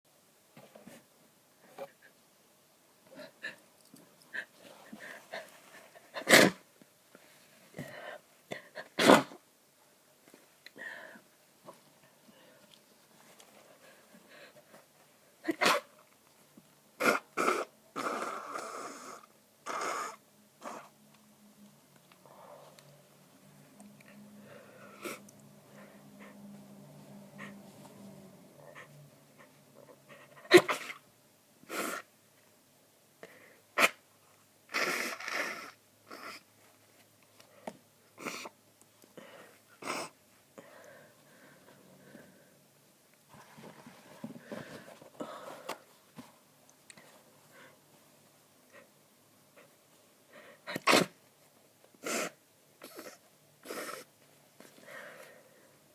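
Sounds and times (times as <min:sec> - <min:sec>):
person sneezing: 0:06.2 - 0:06.6, 0:08.6 - 0:09.4, 0:15.4 - 0:16.0, 0:30.4 - 0:31.0, 0:33.8 - 0:34.0, 0:50.6 - 0:51.2
noisy breaths: 0:24.1 - 0:30.4, 0:37.4 - 0:46.4, 0:53.7 - 0:55.9.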